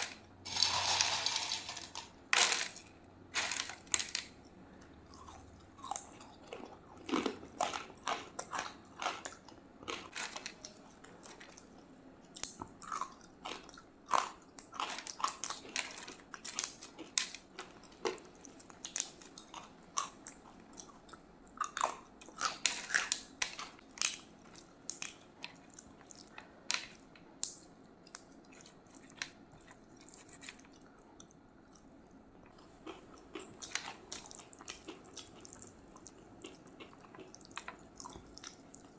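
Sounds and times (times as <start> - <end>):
person chewing and lip-smacking: 28.1 - 38.9.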